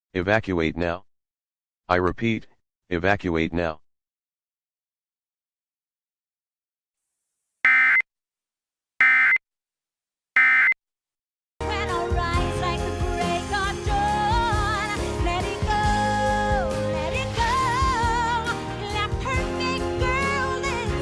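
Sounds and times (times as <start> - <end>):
music with singing: 11.6 - 21.0.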